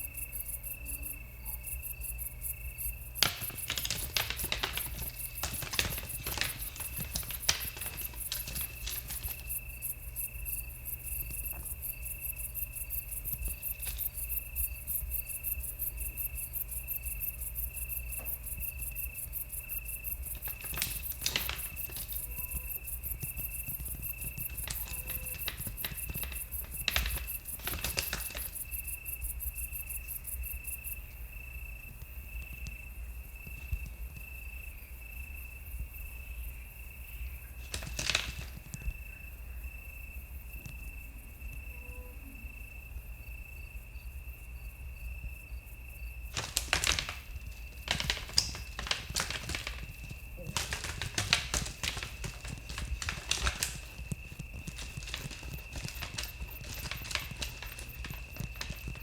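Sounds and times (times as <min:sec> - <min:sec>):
crickets chirping: 0:00.0 - 0:59.0
high insect trill: 0:00.0 - 0:59.0
antlers knocking and hooves scuffling: 0:03.0 - 0:15.3, 0:17.3 - 0:29.2, 0:37.4 - 0:39.0, 0:46.3 - 0:59.0.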